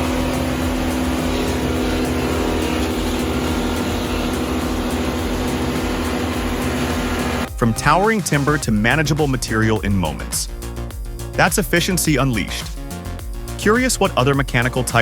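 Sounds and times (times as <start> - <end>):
brush chipper engine humming: 0.0 - 7.5.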